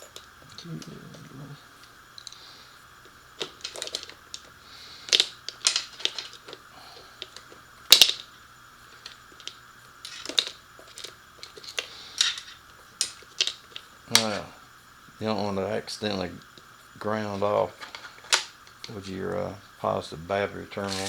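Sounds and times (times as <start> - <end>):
metal hand tools clinking: 3.4 - 6.6, 9.0 - 14.5, 20.7 - 21.0.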